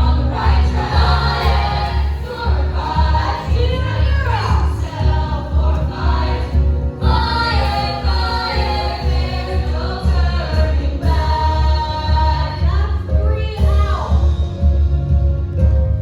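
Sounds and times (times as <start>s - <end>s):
group of voices singing: 0.0s - 13.0s
music with steady bass beat: 0.0s - 16.0s.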